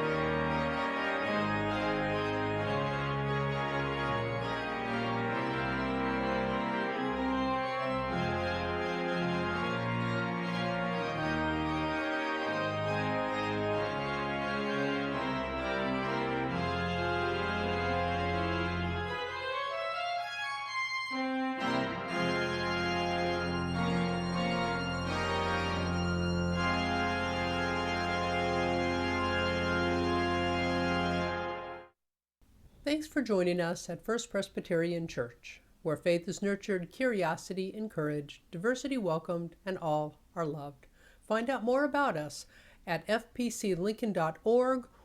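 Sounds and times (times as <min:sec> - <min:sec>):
church organ chords: 0:00.0 - 0:32.0.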